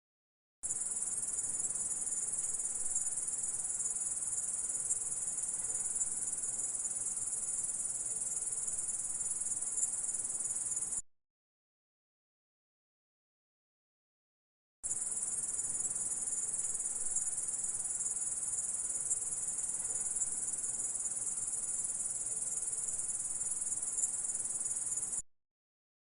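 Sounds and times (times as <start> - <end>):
grasshopper stridulating: 14.9 - 25.2.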